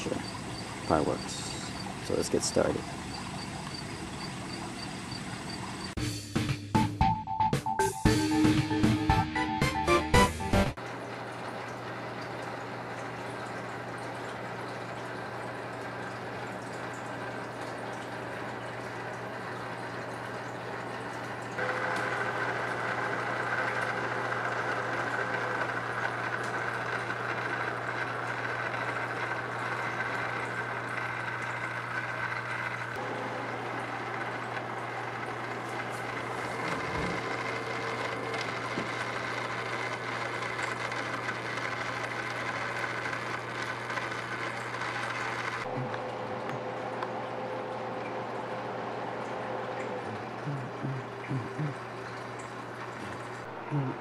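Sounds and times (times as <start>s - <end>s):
toy car electric motor whine: 21.6s - 46.0s.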